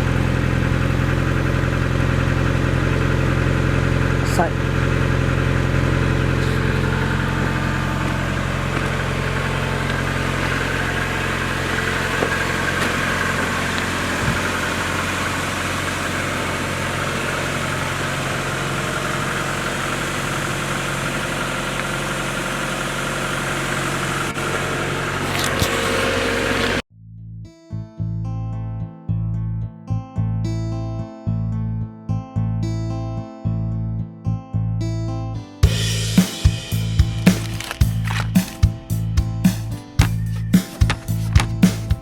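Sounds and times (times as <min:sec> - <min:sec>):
car engine idling: 0:00.0 - 0:26.8, 0:35.6 - 0:42.0.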